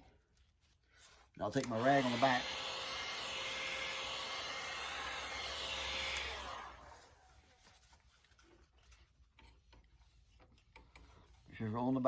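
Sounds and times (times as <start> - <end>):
heat gun blowing: 1.4 - 7.3.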